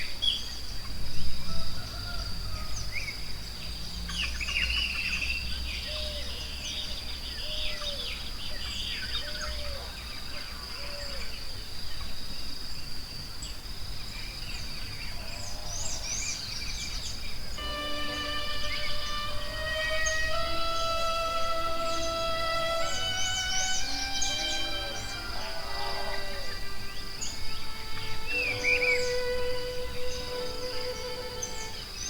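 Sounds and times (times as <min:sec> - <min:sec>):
birds chirping and warbling: 0:14.2 - 0:32.0
high-pitched insect drone: 0:17.6 - 0:32.0
low arched bird call: 0:17.6 - 0:32.0
soft instrumental music: 0:17.6 - 0:32.0.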